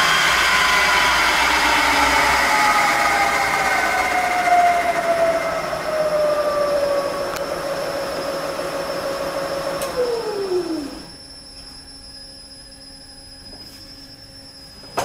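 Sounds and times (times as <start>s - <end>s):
mill spindle whining: 0.0s - 15.0s.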